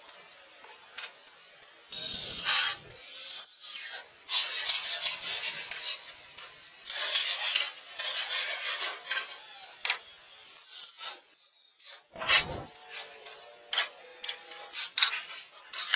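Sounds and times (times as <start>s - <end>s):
scraping against rough surface: 12.2s - 12.7s.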